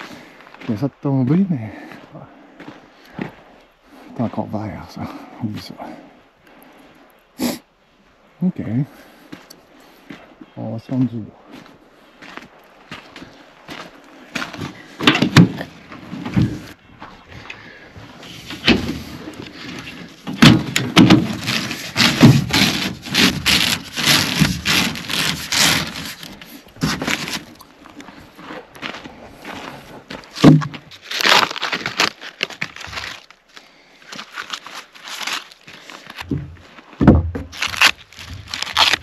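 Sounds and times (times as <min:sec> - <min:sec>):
dry branches snapping: 0:30.4 - 0:33.4, 0:34.1 - 0:36.3, 0:37.4 - 0:39.0.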